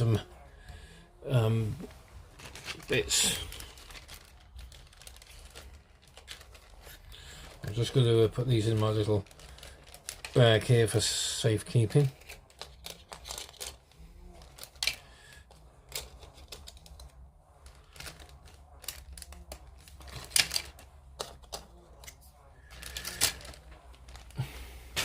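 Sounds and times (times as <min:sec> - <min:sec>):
plastic parts clicking: 0:12.1 - 0:24.3
bag rustling: 0:22.6 - 0:25.0.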